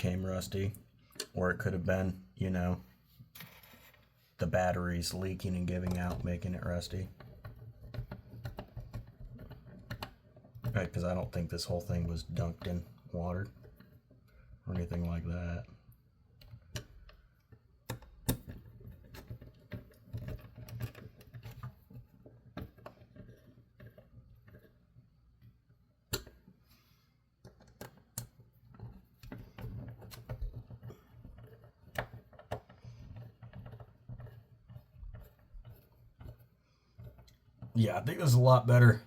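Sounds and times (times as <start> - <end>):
plastic parts and tools clicking: 5.8 - 11.3, 16.3 - 37.8.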